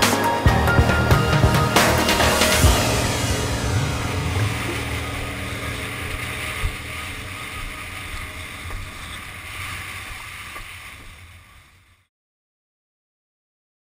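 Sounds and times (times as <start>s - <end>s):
water rushing past a boat: 1.0s - 11.4s
wind rushing: 1.2s - 11.5s.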